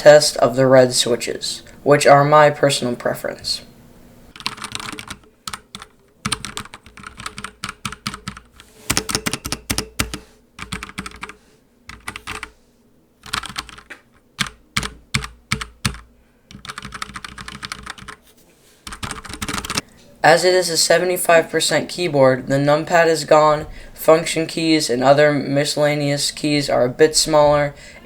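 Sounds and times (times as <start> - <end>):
keyboard keystroke clicks: 4.4 - 12.5.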